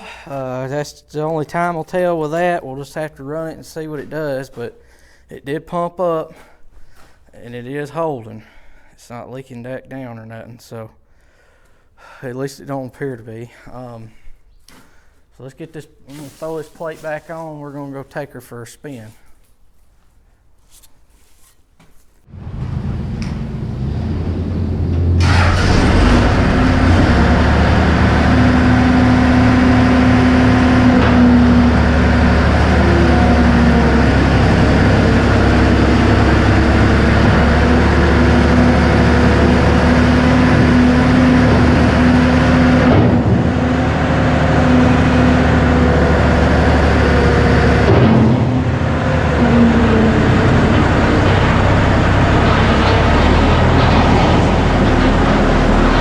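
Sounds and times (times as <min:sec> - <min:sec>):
track loader diesel engine running: 0:00.0 - 0:05.0, 0:22.3 - 0:56.0.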